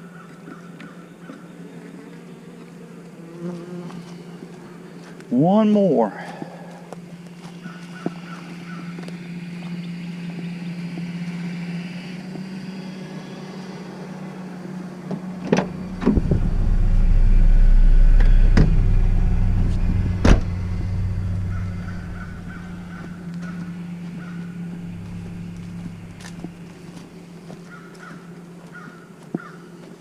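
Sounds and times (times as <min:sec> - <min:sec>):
steady low hum: 0:06.7 - 0:28.6
deep rumble: 0:15.3 - 0:27.7.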